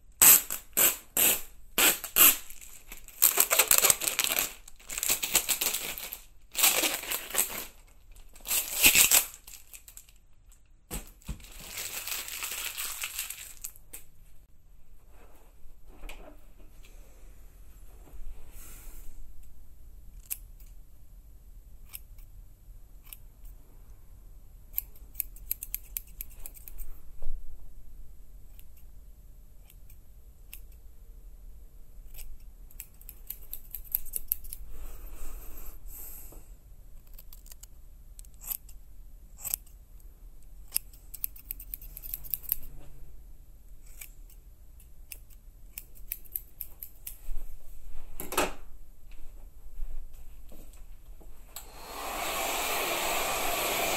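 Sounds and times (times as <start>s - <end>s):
scissors snipping: 24.7s - 26.9s, 29.6s - 30.8s, 32.0s - 34.6s, 40.6s - 42.7s, 43.8s - 47.2s.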